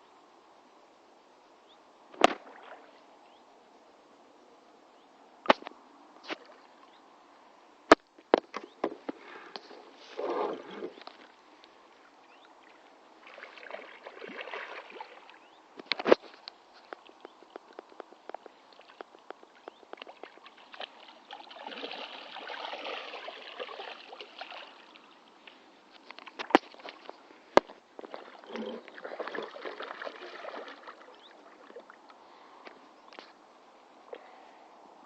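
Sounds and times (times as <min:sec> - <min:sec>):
water splashing and sloshing: 0:02.1 - 0:03.1, 0:08.4 - 0:33.2.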